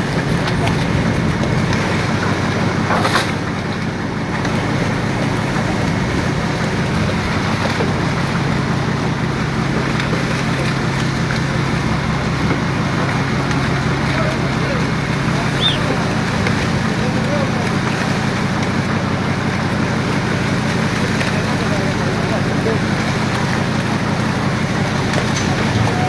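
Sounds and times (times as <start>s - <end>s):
boat engine humming: 0.0s - 26.0s
wind and water noise: 0.0s - 26.0s.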